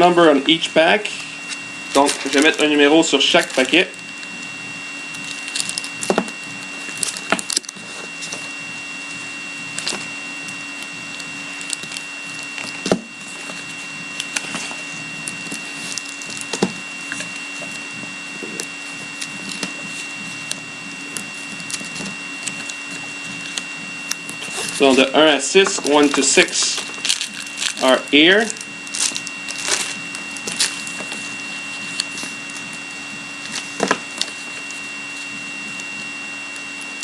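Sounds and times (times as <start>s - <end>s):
faint high-pitched electrical whine: 0.0s - 37.0s
card packs tapping and rustling: 1.5s - 4.4s, 5.1s - 8.5s, 10.8s - 17.8s, 24.2s - 32.8s, 33.4s - 34.8s.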